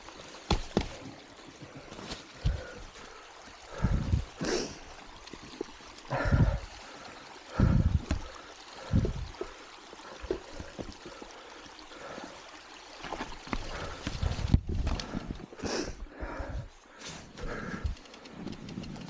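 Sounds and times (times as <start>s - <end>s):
bike tyre and wind noise: 3.7s - 4.4s, 7.6s - 8.2s, 8.8s - 9.4s, 13.1s - 19.0s
small bike clicks: 17.7s - 19.0s.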